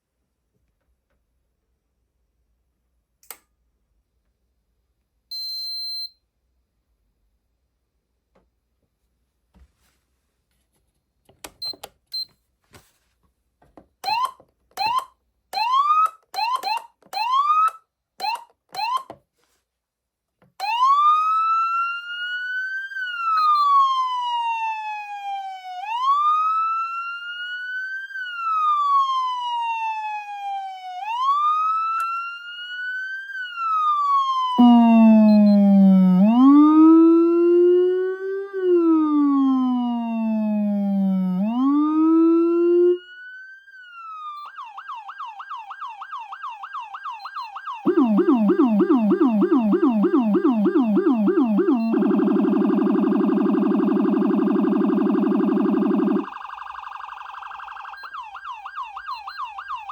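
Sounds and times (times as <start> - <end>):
siren wail: 14.0 - 19.1, 20.6 - 59.9
deep low-frequency siren wail: 20.6 - 59.9
short rising siren chirps: 34.6 - 59.9
faint control beeps: 47.2 - 56.3.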